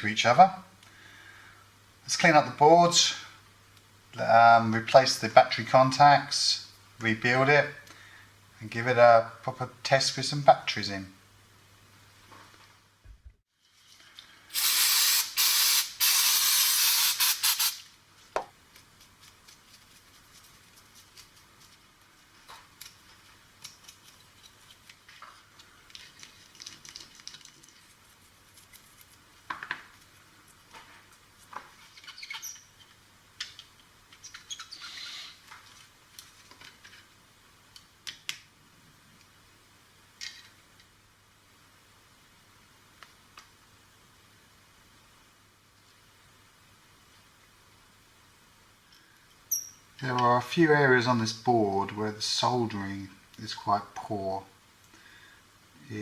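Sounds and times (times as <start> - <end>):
aerosol spray bursts: 14.5 - 17.8
light scratches and clicks: 18.7 - 29.2.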